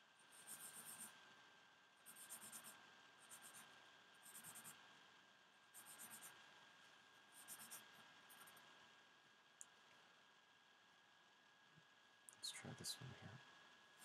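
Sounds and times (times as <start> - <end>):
faint high hum: 0.0 - 14.0
scratchy drawing strokes: 0.2 - 1.2, 2.0 - 4.9, 5.7 - 6.4, 7.3 - 8.7.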